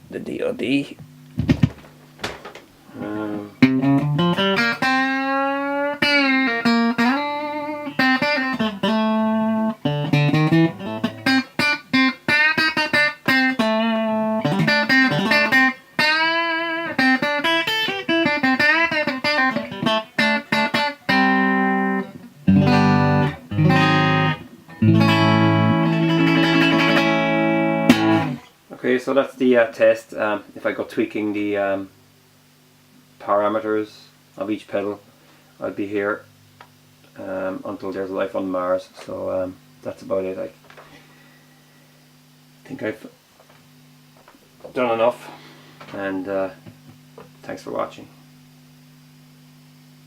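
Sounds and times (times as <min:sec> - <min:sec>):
electric guitar: 0:01.4 - 0:28.6.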